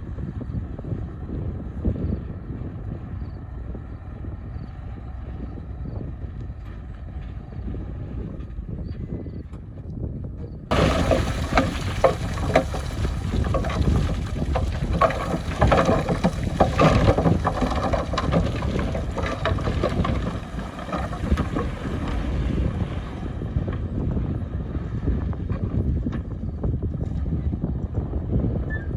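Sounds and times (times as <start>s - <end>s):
heavy machine engine rumbling: 0.0s - 28.9s
sharp cracks and clattering knocks: 10.7s - 22.8s.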